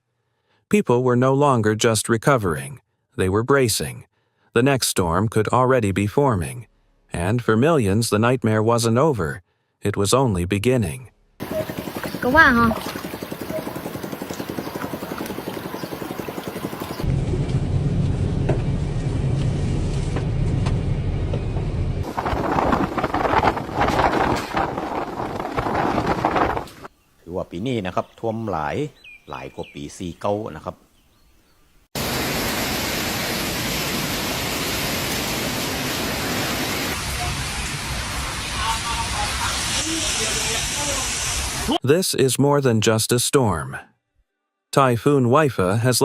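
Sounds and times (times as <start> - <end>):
motor with fast pulse: 11.4 - 17.1
rush of water: 11.4 - 17.1, 22.1 - 26.8, 32.0 - 41.7
deep steady rumble: 11.4 - 26.7.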